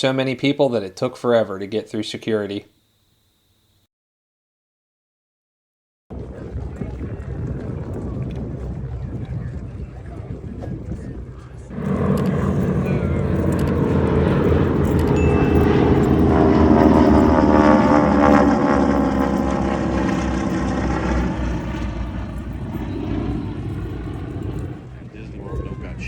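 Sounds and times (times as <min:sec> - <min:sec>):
aircraft flying overhead: 0:06.1 - 0:26.0.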